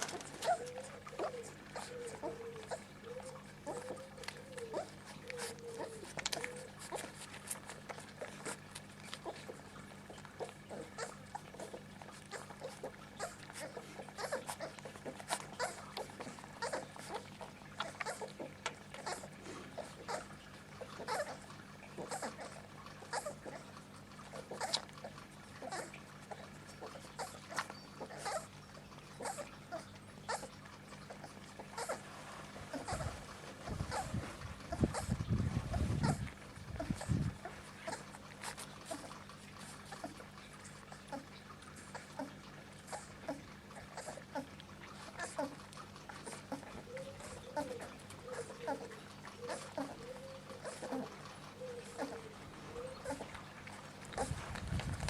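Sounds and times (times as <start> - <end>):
small clicks and scuffling: 0.0 - 2.0, 3.7 - 10.6
puppies whining: 0.0 - 55.0.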